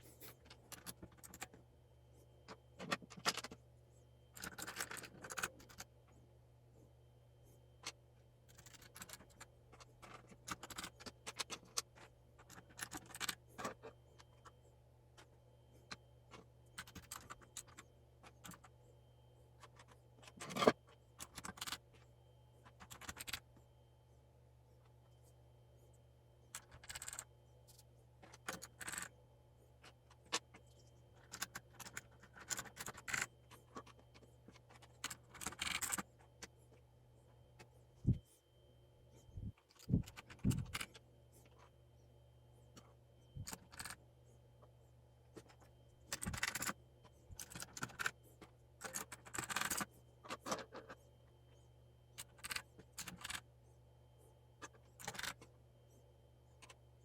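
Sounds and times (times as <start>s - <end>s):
low steady hum: 0.0s - 57.0s
plastic keyboard parts clicking: 19.6s - 21.8s, 22.8s - 23.4s, 26.6s - 27.2s, 28.2s - 29.1s, 31.2s - 36.0s, 43.4s - 44.0s, 45.4s - 46.8s, 47.4s - 48.2s, 48.8s - 51.0s, 52.2s - 53.4s, 55.0s - 55.5s.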